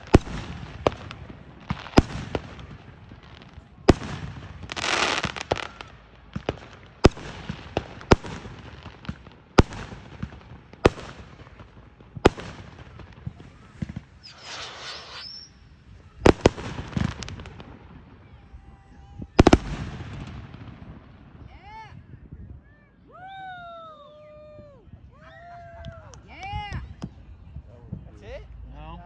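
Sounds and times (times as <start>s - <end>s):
crackling hiss: 0.0s - 21.4s
fireworks bangs: 0.0s - 22.1s.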